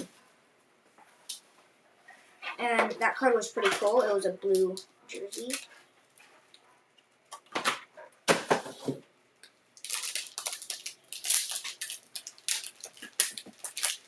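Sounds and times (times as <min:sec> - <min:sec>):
packaging crinkling and rustling: 0:03.6 - 0:06.2, 0:09.8 - 0:14.0.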